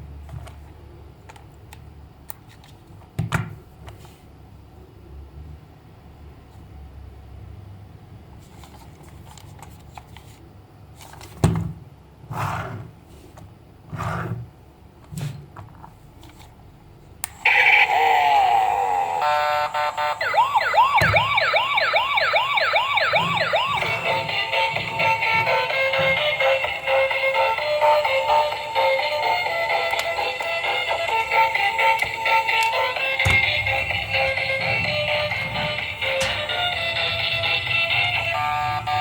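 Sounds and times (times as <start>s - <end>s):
toy electronic siren wailing: 17.4s - 27.1s.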